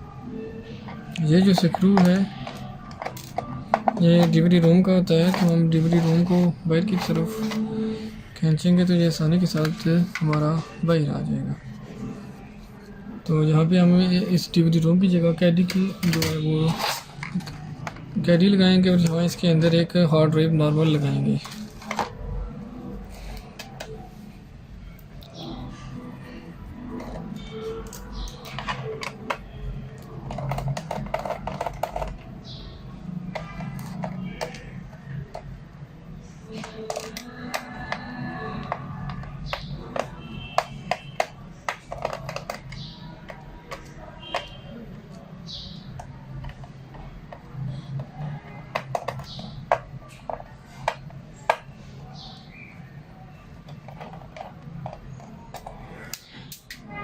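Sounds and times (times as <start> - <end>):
light plastic and metal taps: 36.5 - 44.6, 46.0 - 51.7.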